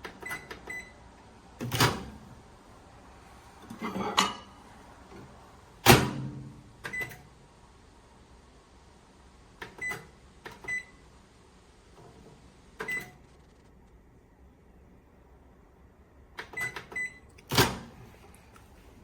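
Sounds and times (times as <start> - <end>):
short keypad beeps: 0.2 - 1.0, 10.7 - 11.0, 16.6 - 17.2
microwave door thump shut: 5.8 - 6.6.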